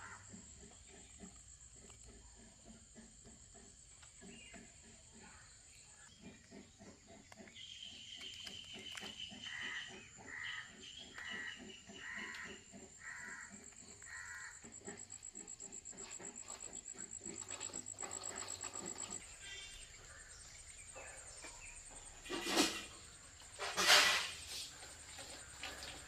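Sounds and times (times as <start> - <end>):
crows cawing: 0.0 - 0.4, 9.4 - 15.2.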